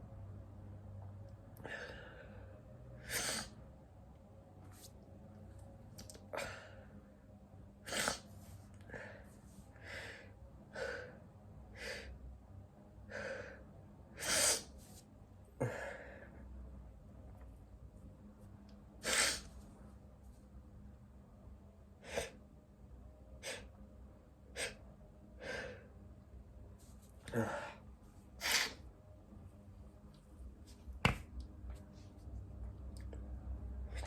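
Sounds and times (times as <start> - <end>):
person sneezing: 3.0 - 3.6, 7.9 - 8.3, 19.0 - 19.5, 28.4 - 28.8.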